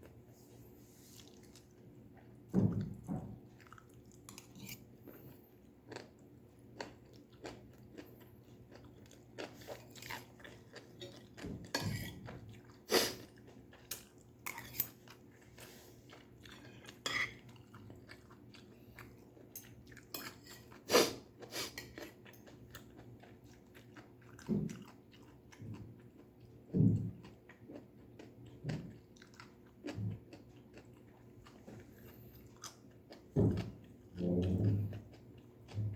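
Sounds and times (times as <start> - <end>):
chewing and crunching vegetables: 0.0 - 35.9.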